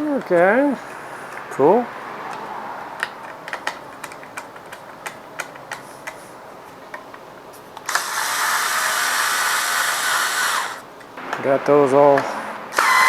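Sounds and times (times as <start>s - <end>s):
cordless screwdriver whirring: 7.8s - 10.9s, 12.7s - 13.0s.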